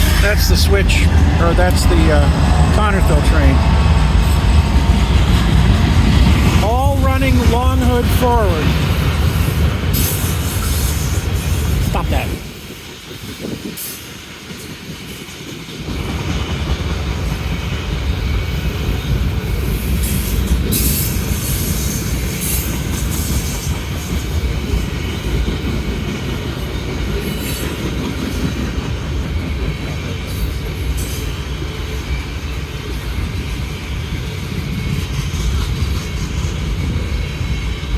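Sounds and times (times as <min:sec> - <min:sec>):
train wheels rumbling on rails: 0:00.0 - 0:37.9.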